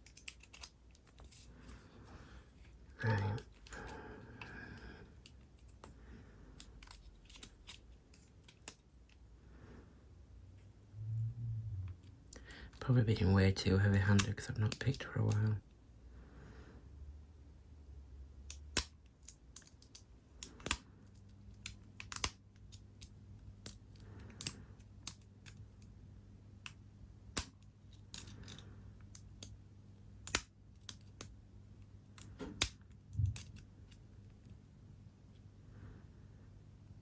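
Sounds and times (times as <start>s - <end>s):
lock pick clicking in padlock: 30.2s - 31.3s.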